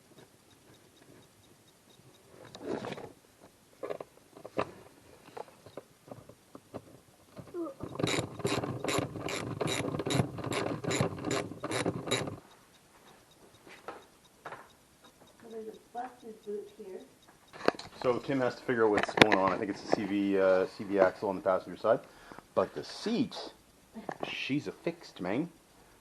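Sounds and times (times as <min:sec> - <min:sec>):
ratchet wrench clicking: 0:07.9 - 0:12.5.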